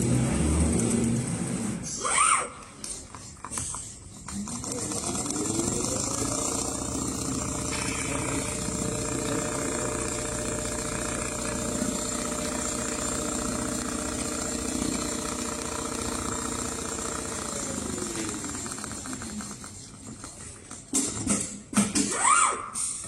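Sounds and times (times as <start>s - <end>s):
sewing machine stitching: 3.6s - 21.4s.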